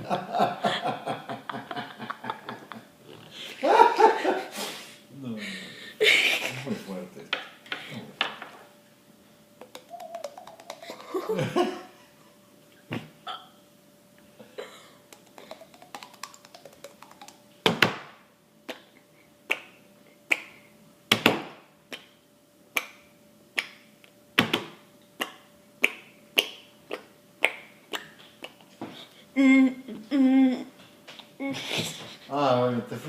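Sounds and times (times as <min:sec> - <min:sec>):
mouth clicking and popping: 0:09.6 - 0:11.3, 0:15.1 - 0:17.5, 0:25.2 - 0:28.7.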